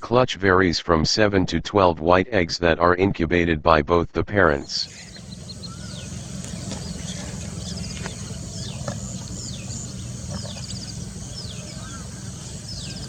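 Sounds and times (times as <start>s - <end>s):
steady low rumble: 4.5s - 13.0s
ducks whistling calls: 4.6s - 13.0s.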